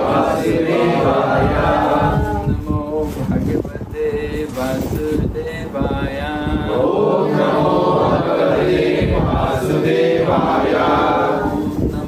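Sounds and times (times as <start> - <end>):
group of voices chanting: 6.6 - 11.7.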